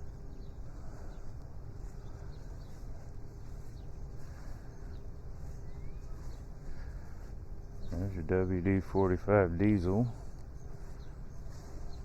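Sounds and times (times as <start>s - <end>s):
faint steady hum: 0.0s - 12.0s
bird chirps: 3.4s - 6.9s.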